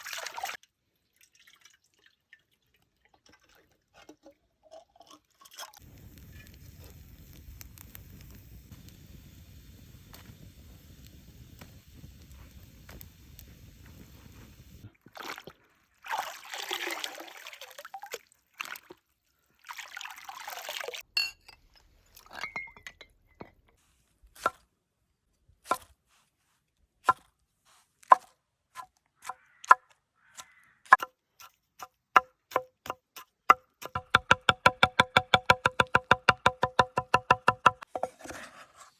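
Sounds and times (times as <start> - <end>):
liquid pouring: 0.0 - 18.8, 19.6 - 21.0.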